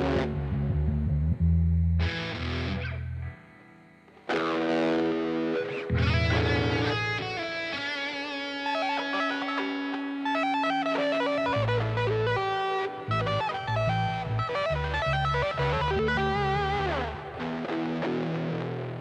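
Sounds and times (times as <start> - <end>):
low bass notes: 0.0 - 3.4, 5.9 - 7.4, 11.5 - 17.7
electric guitar lead line: 0.0 - 19.0.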